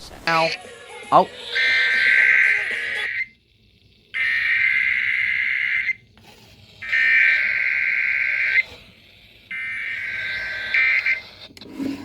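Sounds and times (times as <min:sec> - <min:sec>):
high-pitched buzzing data bursts: 0:04.2 - 0:06.0.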